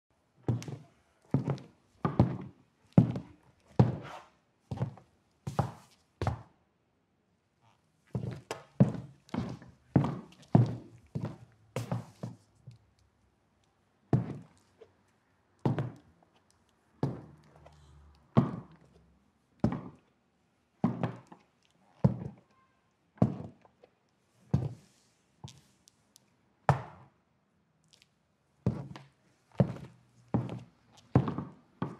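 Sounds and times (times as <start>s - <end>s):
dress shoes walking on wooden floor: 0.5s - 4.0s, 4.7s - 6.4s, 8.2s - 12.8s, 15.6s - 16.1s, 18.4s - 18.9s, 19.6s - 20.0s, 20.8s - 21.4s, 23.2s - 23.7s, 28.7s - 31.9s.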